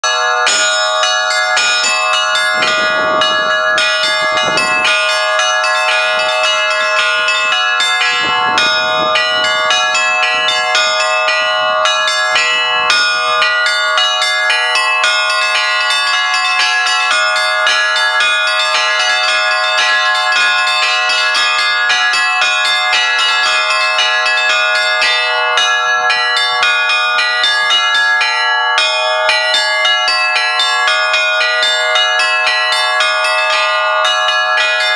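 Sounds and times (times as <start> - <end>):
large bells ringing: 0.0 - 34.9
small bells rapidly struck: 0.0 - 34.9.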